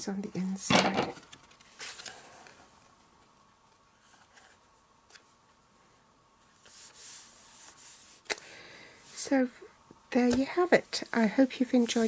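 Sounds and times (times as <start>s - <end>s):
soft papery rubbing: 5.8s - 8.2s, 10.2s - 12.0s.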